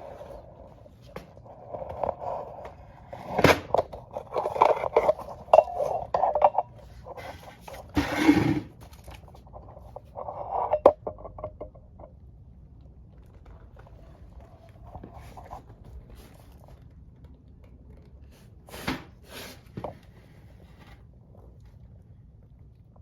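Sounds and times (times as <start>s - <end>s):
hard parts clicking and scraping: 0.0s - 12.1s.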